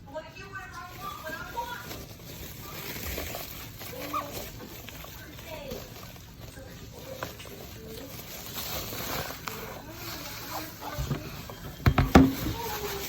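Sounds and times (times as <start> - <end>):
heavy knocks of fridge set down: 11.0 - 12.6.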